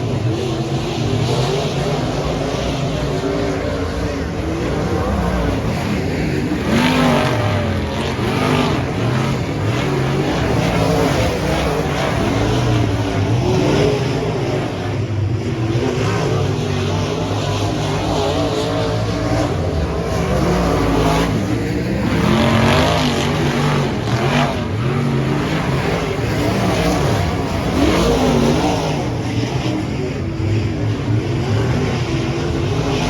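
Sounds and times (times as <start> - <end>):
race car engines revving: 0.0 - 33.0.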